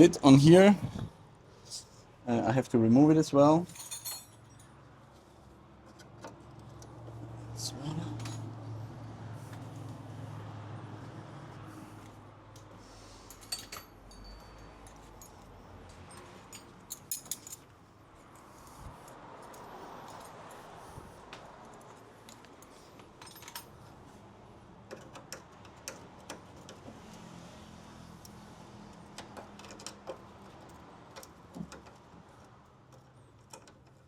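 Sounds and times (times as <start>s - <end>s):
hand tools clinking on metal: 3.7s - 4.8s, 8.0s - 8.5s, 13.2s - 17.7s.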